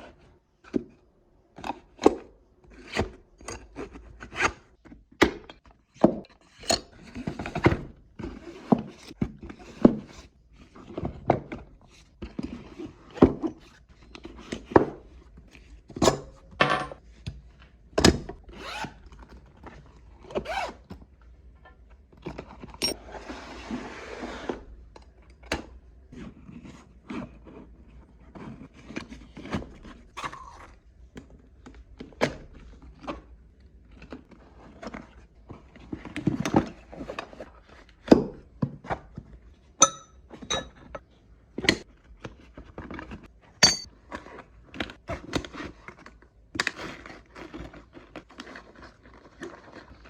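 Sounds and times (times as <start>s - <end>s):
hand tools clunking and knocking: 43.6s - 43.9s.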